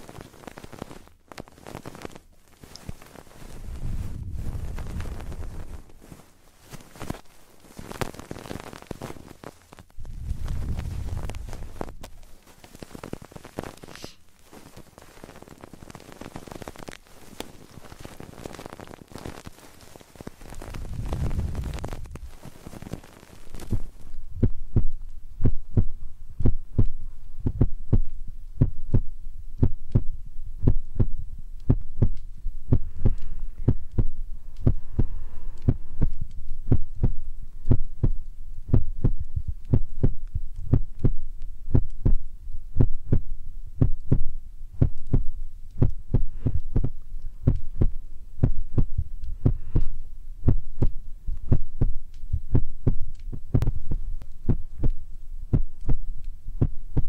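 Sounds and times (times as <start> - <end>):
fingers tapping on microphone: 20.5 - 57.0.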